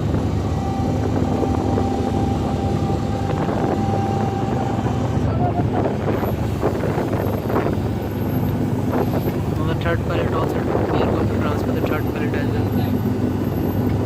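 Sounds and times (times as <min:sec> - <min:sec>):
marine diesel engines running: 0:00.0 - 0:14.0
wind buffeting microphone: 0:00.0 - 0:14.0.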